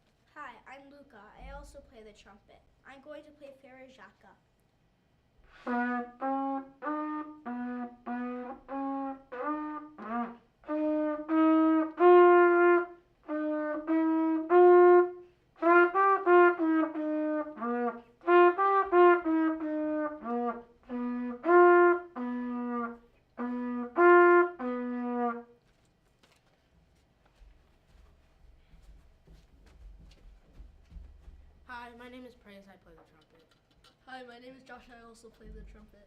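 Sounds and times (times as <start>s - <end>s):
solo trumpet melody: 5.5s - 25.6s.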